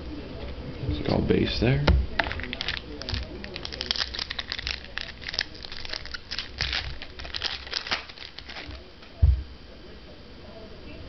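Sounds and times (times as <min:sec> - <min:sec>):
wrapper crinkling and tearing: 0:02.2 - 0:08.8.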